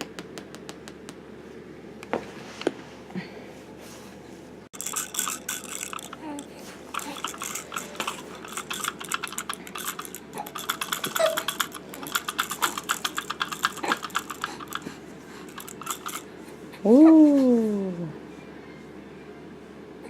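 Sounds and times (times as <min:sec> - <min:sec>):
plastic beads rattling in toy: 0:04.7 - 0:16.3.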